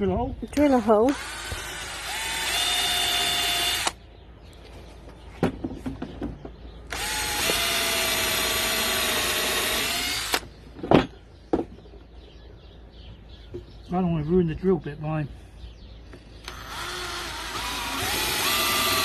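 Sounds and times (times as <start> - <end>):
electric drill boring wood: 1.1 - 4.0, 6.9 - 10.4, 16.5 - 19.0.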